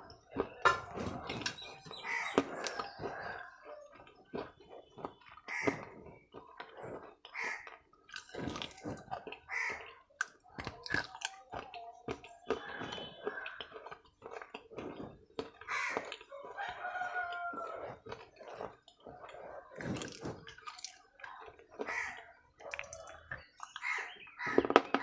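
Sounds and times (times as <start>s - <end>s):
crunchy chewing: 0.0s - 25.0s
rooster crowing: 16.3s - 18.0s.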